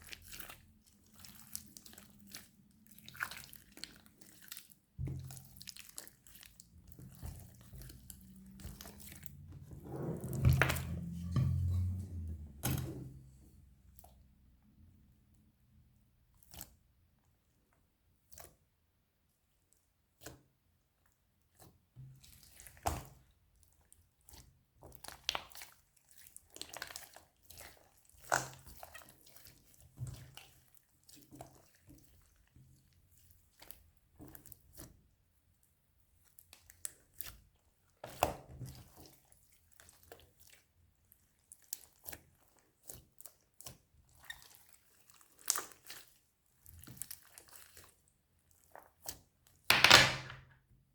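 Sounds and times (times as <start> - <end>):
slime squished by hand: 42.8 - 47.9.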